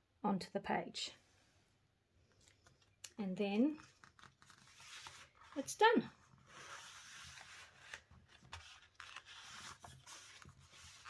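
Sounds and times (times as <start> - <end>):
paper rustling: 3.7 - 11.0.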